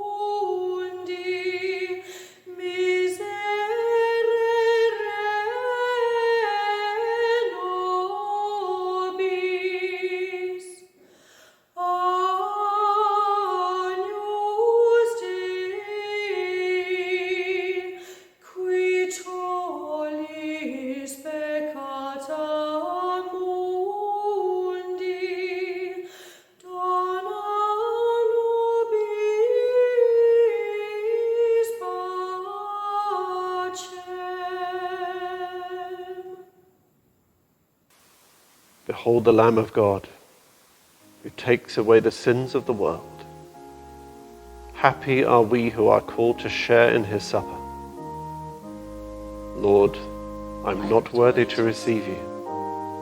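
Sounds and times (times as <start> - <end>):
woman singing: 0.0 - 10.9, 11.8 - 36.5
breaths: 2.0 - 2.5, 11.0 - 11.8, 18.0 - 18.4, 26.0 - 26.6.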